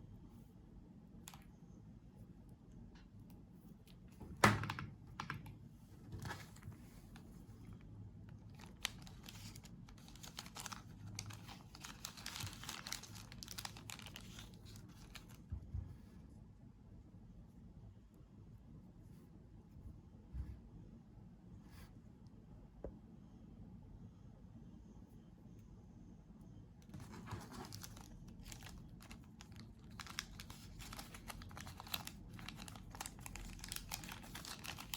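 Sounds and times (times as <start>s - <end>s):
packaging rustling: 8.4s - 15.4s, 26.9s - 34.9s.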